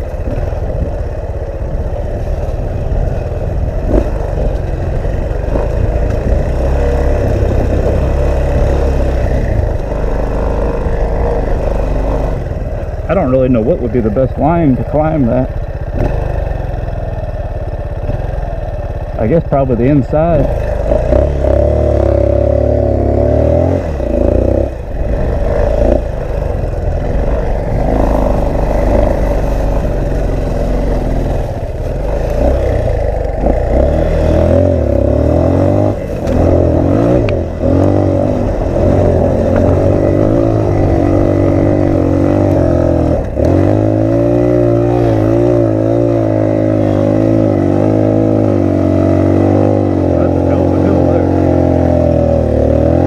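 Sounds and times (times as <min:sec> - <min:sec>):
wind buffeting microphone: 0:00.0 - 0:12.8
motorcycle engine revving: 0:00.0 - 0:53.0.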